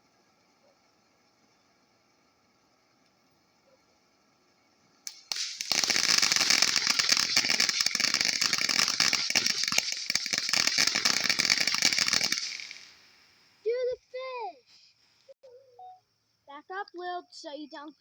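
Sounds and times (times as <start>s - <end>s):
crackling spray of sparks: 5.0s - 13.7s
firework pop: 5.1s - 13.2s.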